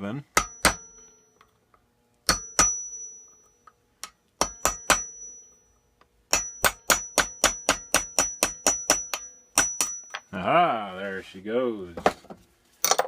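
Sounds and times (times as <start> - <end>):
hammer striking steel punch: 0.3 - 1.4, 2.2 - 10.3.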